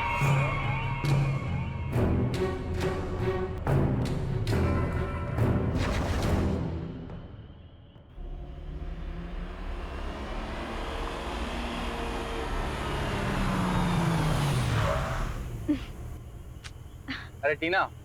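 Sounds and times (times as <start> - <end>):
motor vehicle passing by: 8.2 - 16.4.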